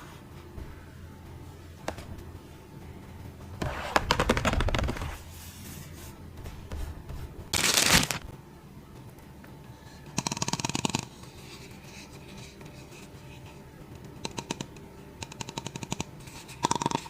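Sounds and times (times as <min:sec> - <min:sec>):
plastic packaging crackling: 0:07.6 - 0:08.3.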